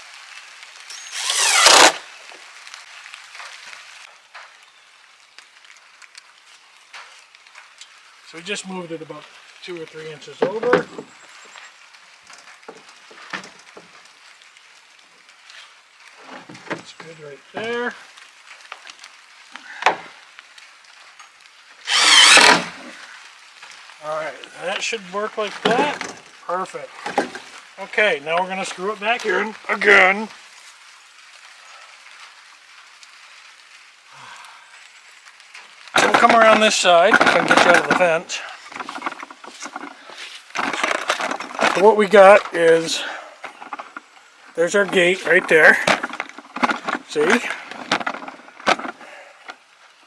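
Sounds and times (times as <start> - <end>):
wood scraping rasp: 0.9 - 2.0, 21.9 - 23.0, 36.0 - 49.2
power drill driving a screw: 0.9 - 2.1, 21.9 - 23.0.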